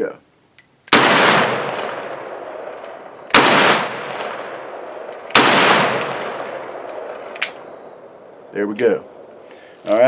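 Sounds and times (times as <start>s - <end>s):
revolver gunshots with echo: 0.9s - 7.9s
sharp click: 6.8s - 7.6s.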